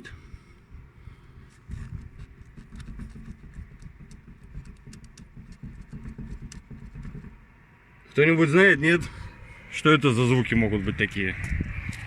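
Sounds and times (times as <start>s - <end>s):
dull suspension knocks: 1.6s - 7.7s.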